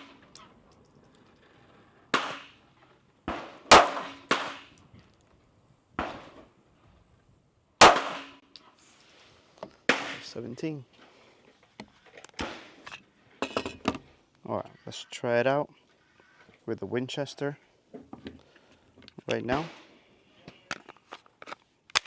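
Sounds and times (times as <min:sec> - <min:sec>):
pistol shots: 0:02.1 - 0:02.6, 0:03.3 - 0:04.7, 0:07.8 - 0:08.4.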